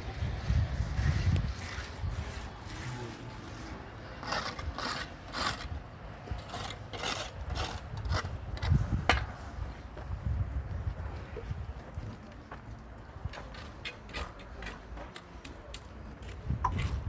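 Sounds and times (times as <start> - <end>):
hand tool scrapes and knocks: 13.3 - 17.0.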